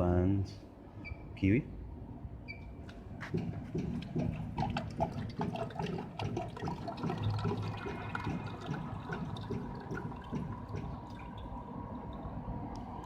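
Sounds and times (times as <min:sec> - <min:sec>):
liquid gurgling and splashing: 0:03.4 - 0:13.0.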